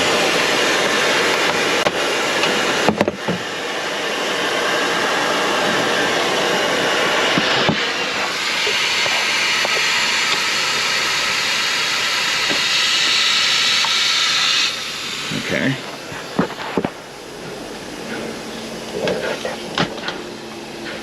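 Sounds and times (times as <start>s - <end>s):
compressed air hissing: 0.0s - 21.0s.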